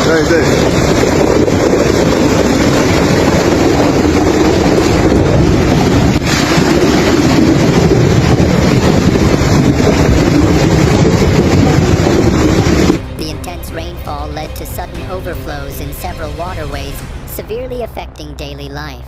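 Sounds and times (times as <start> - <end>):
wind buffeting microphone: 0.0 - 13.1
floodwater rushing: 0.0 - 13.2.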